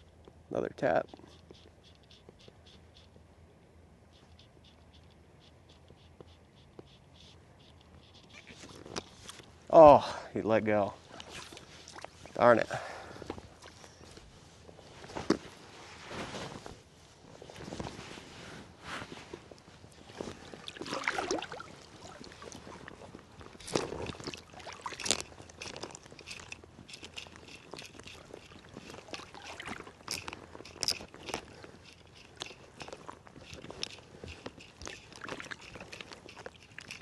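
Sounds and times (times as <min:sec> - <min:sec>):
footsteps crunching and scraping: 0:13.2 - 0:37.0
rustling: 0:13.2 - 0:37.0.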